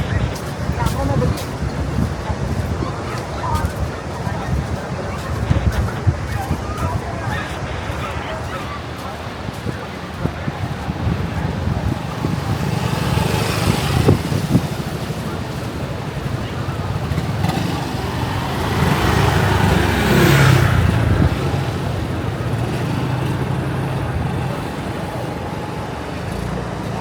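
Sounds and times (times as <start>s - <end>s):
traffic engine rumble: 0.0s - 27.0s
vehicle passing close: 9.3s - 27.0s.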